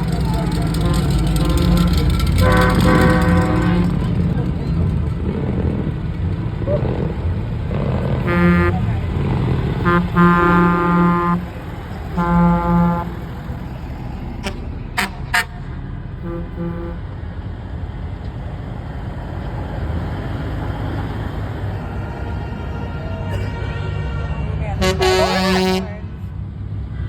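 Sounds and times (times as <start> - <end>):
truck horn blasts: 0.0 - 4.3, 8.1 - 13.7, 14.3 - 17.2, 21.7 - 26.2
diesel trucks rumbling: 0.0 - 27.0.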